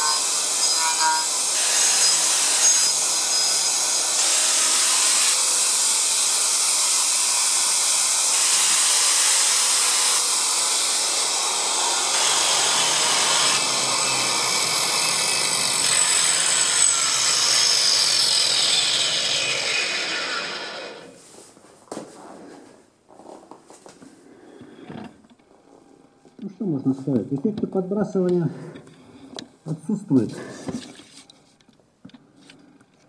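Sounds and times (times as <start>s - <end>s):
cutter disc grinding wood: 0.0s - 21.2s.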